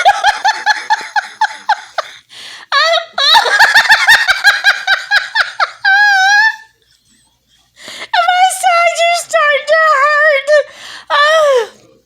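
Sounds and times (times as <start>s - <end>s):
gasping in-breath: 10.7s - 11.1s.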